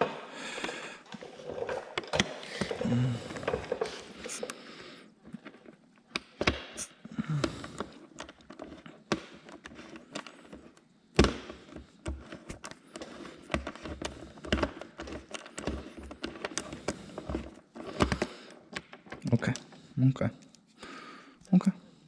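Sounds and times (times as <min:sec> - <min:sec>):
hand tools clicking and tapping: 0:06.1 - 0:19.7.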